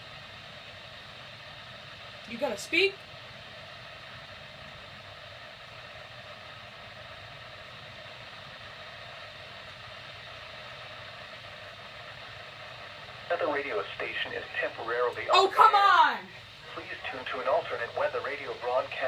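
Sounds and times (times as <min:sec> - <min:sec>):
radio receiver hissing: 0:12.9 - 0:19.0.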